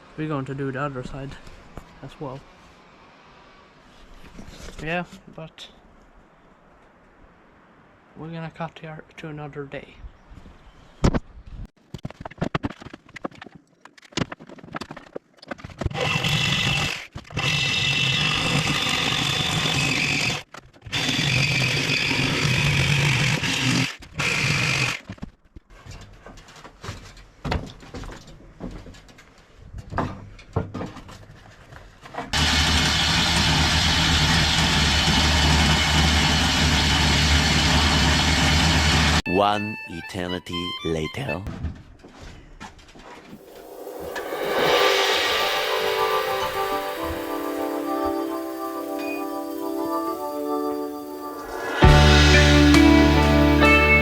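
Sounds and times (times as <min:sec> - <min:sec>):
power tool whining on metal: 0:32.4 - 0:39.2.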